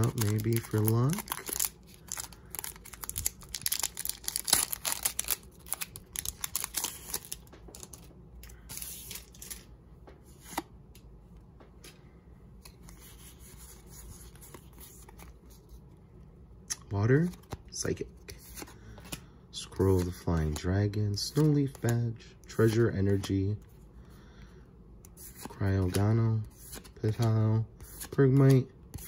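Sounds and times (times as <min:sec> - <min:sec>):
foil wrapper crinkling and tearing: 0:00.0 - 0:08.0.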